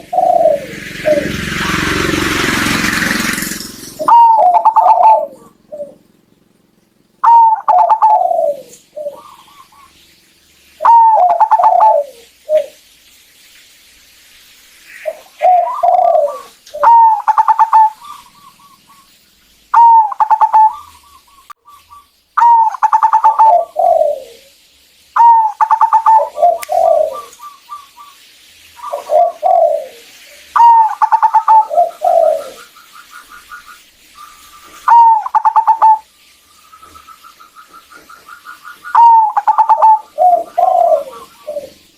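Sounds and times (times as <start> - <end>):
dove cooing: 0.0 - 6.2, 7.2 - 10.0, 10.8 - 12.8, 15.0 - 19.0, 19.7 - 21.4, 22.4 - 24.6, 25.2 - 28.1, 28.8 - 33.7, 34.4 - 36.1, 36.8 - 41.9.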